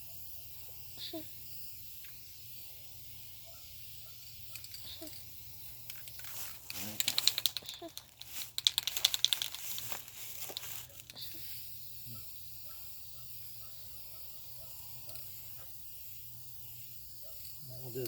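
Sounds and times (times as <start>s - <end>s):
spray hissing: 0.4s - 7.9s, 9.8s - 18.0s
aerosol can rattling: 3.9s - 12.6s.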